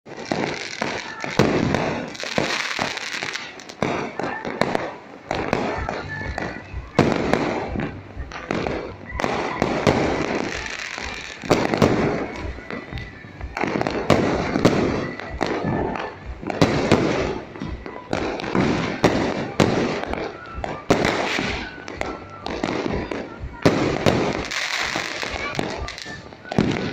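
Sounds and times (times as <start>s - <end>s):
firecrackers banging and crackling: 0.0s - 26.9s.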